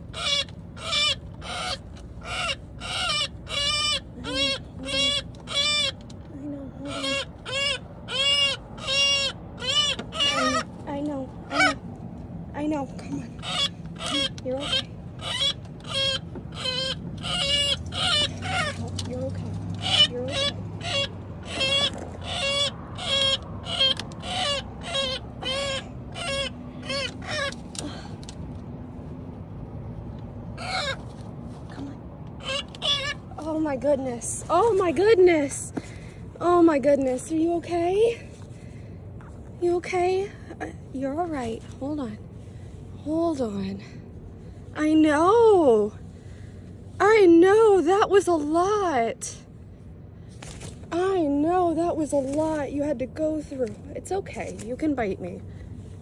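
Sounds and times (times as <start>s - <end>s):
woodpecker harsh squawks: 0.0s - 6.1s, 6.9s - 10.8s, 11.4s - 11.9s, 13.4s - 19.1s, 19.8s - 28.0s, 30.6s - 31.1s, 32.4s - 37.4s.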